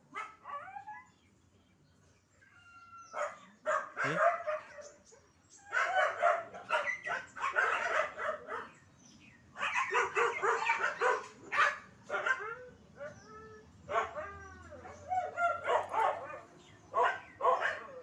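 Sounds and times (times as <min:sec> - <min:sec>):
dog barking and yipping: 0:00.1 - 0:00.8, 0:03.2 - 0:04.9, 0:05.7 - 0:08.8, 0:09.6 - 0:13.2, 0:13.9 - 0:18.0.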